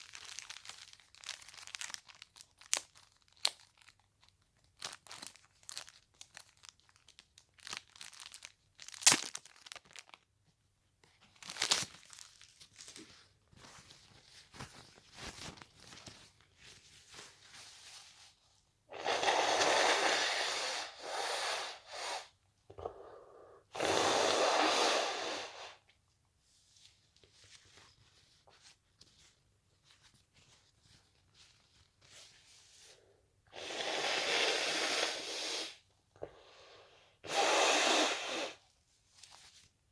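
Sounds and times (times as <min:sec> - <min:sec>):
tissue rustling: 0:00.0 - 0:03.9, 0:11.0 - 0:18.6, 0:26.4 - 0:32.9
person blowing nose: 0:18.9 - 0:25.8, 0:33.5 - 0:38.6.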